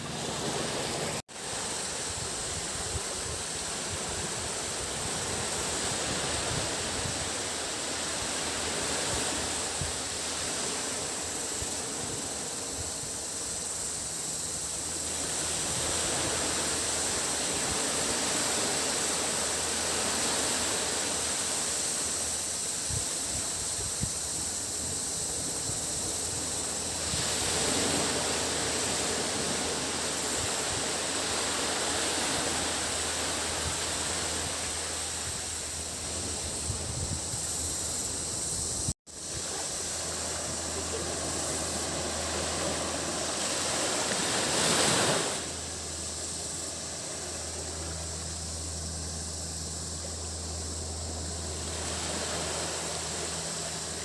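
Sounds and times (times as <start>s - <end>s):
cicadas droning: 0.0s - 54.0s
sea waves washing on beach: 0.0s - 54.0s.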